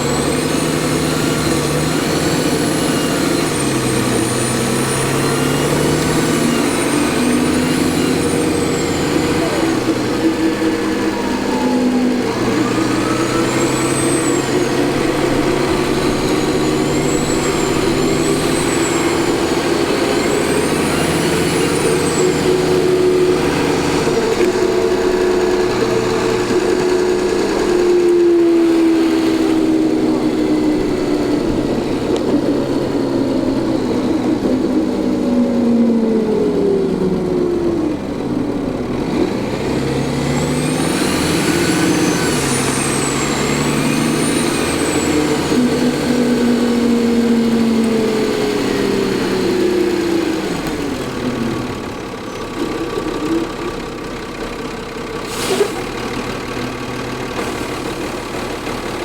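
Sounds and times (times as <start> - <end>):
turbocharger whining: 0.0 - 55.0
bus diesel engine running: 0.0 - 59.0.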